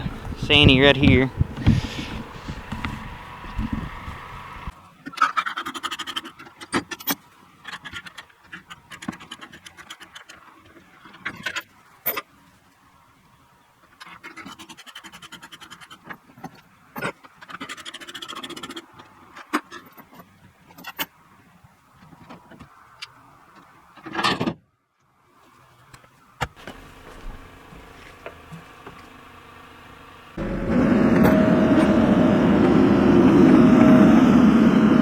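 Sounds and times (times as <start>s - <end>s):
scraping and rubbing: 1.4s - 3.9s.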